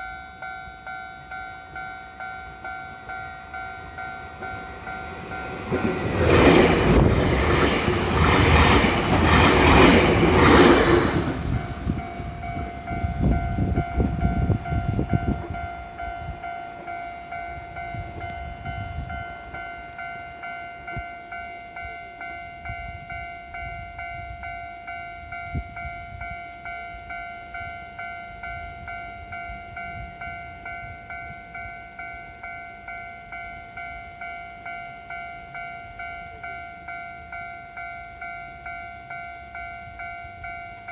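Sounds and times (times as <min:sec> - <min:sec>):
level crossing warning bell: 0:00.0 - 0:40.9
train wheel clatter: 0:04.4 - 0:13.4.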